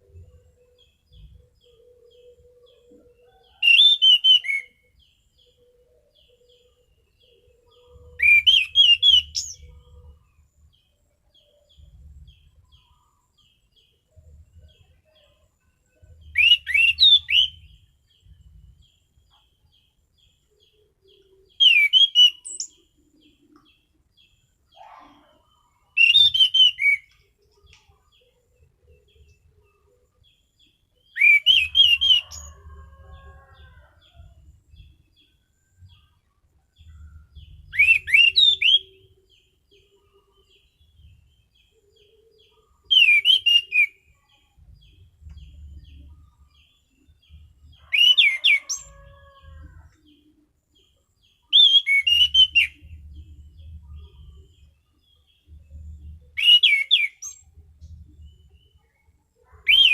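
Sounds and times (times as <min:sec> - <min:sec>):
thrush whistling song: 0:03.5 - 0:04.9, 0:08.0 - 0:09.8, 0:16.3 - 0:17.7, 0:21.6 - 0:22.8, 0:26.0 - 0:27.2, 0:31.1 - 0:32.6, 0:37.1 - 0:39.1, 0:42.8 - 0:44.1, 0:51.5 - 0:53.0, 0:56.3 - 0:57.4.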